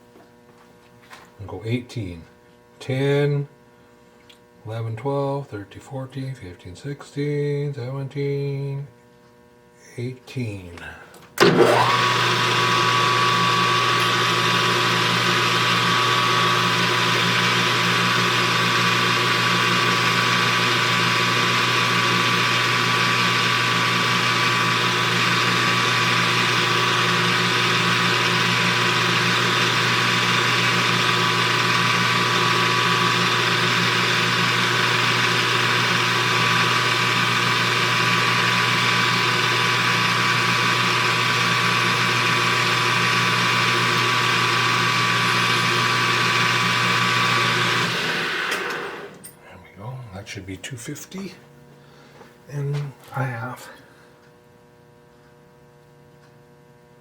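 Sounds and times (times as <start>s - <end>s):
lathe motor whining: 11.4s - 49.2s.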